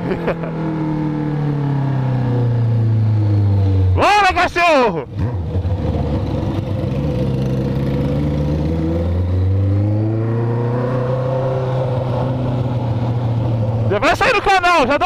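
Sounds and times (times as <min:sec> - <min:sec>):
motorcycle engine running: 0:05.0 - 0:10.2.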